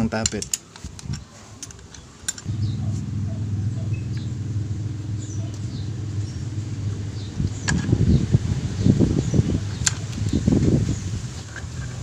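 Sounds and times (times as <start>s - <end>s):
low motor drone: 2.4s - 12.0s.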